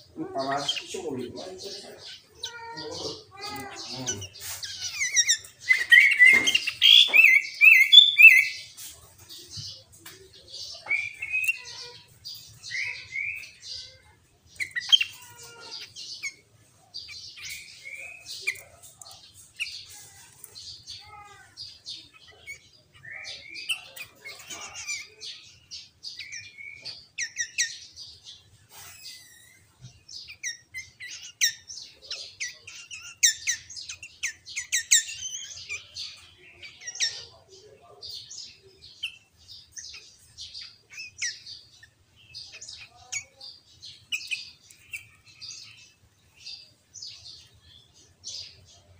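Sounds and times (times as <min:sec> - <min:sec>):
bird chirps: 0:00.0 - 0:48.9
bird singing whistled notes: 0:04.9 - 0:08.7.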